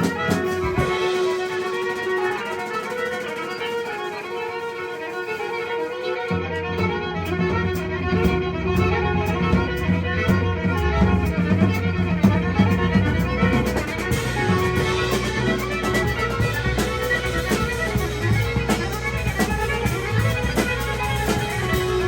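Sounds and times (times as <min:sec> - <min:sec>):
sustained melodic line: 0:00.0 - 0:22.0
heavy low bass: 0:06.3 - 0:22.0.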